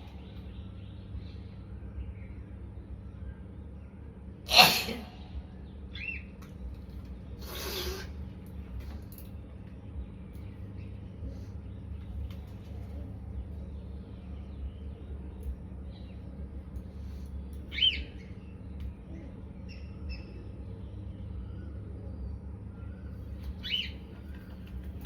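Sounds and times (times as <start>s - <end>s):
steady low hum: 0.0s - 25.0s
person sneezing: 4.5s - 5.2s.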